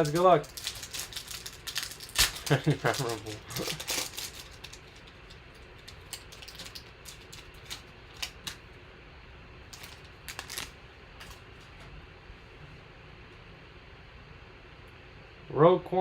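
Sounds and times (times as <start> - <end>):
trading cards being handled: 0.0 - 8.6, 9.7 - 11.8.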